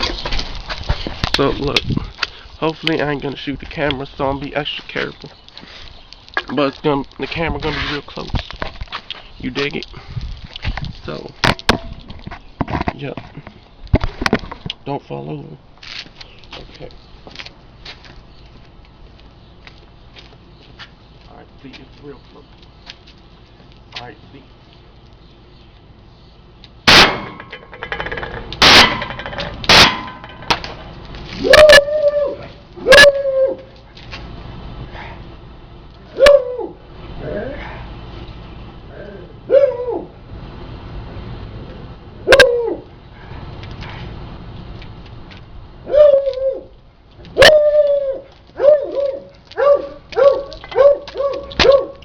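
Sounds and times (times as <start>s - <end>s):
bb pistol shots: 26.9s - 27.5s, 28.6s - 30.8s
dog barking: 39.5s - 40.1s, 48.6s - 52.0s.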